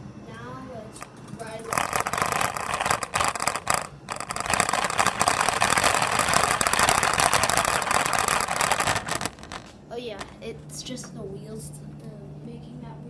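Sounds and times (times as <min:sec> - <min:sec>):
wheels rolling creaking on floor: 0:01.0 - 0:10.4.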